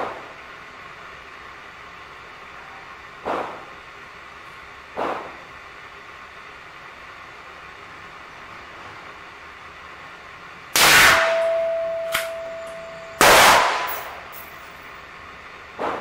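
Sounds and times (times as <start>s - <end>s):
steady ringing tone: 11.2s - 13.2s, 13.8s - 15.1s.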